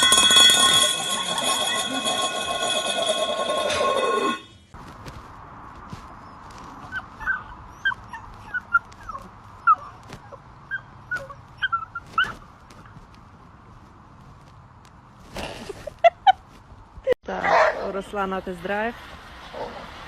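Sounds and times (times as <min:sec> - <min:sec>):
dog whimpering: 0:06.8 - 0:12.4.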